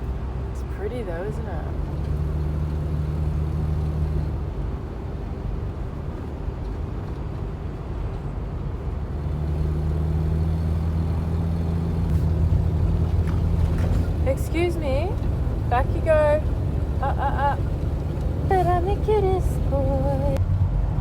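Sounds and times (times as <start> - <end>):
road rumble: 0.0 - 21.0
engine drone: 9.0 - 21.0.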